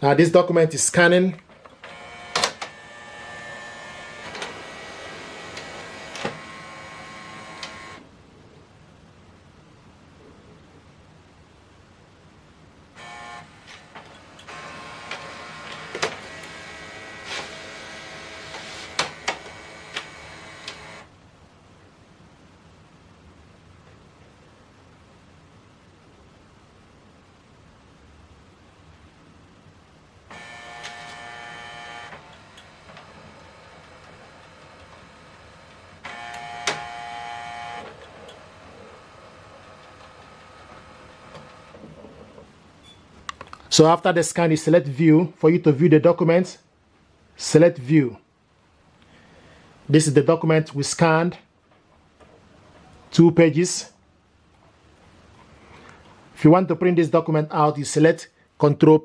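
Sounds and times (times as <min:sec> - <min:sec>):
document feeder motor whirring: 0:01.6 - 0:08.1, 0:13.0 - 0:21.1, 0:30.3 - 0:42.0.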